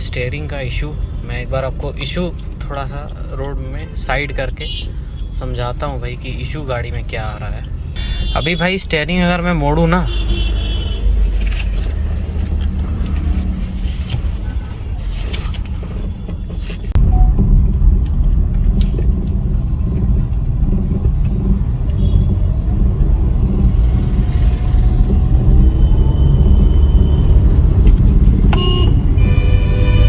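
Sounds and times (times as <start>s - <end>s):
car road and engine rumble: 0.0s - 30.0s
brief pitched tone: 17.0s - 17.5s.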